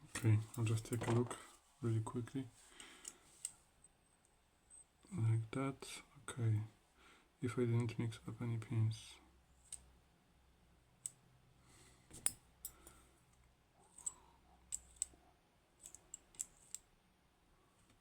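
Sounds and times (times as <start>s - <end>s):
small metal lock parts clicking: 13.9s - 15.2s, 15.8s - 16.9s.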